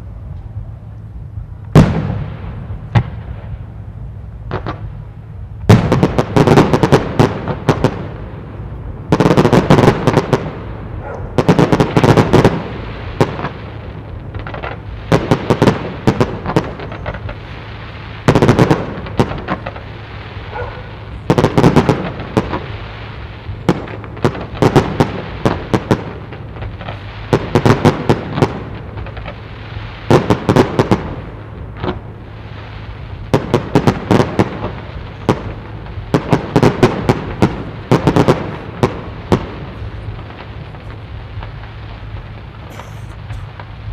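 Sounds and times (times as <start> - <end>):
firework shells bursting: 33.4 - 43.9.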